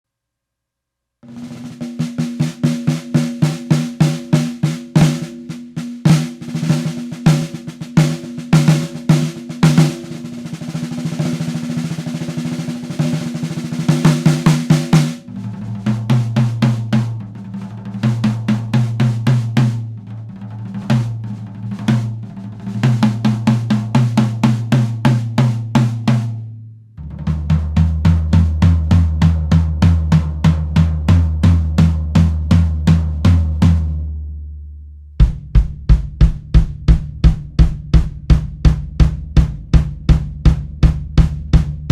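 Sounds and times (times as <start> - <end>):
tom drum struck and rolled: 1.2 - 26.4, 27.0 - 34.0, 35.2 - 41.9
floor tom playing: 1.2 - 34.3, 35.2 - 41.9
bass drum beats: 12.8 - 34.2, 35.2 - 41.9.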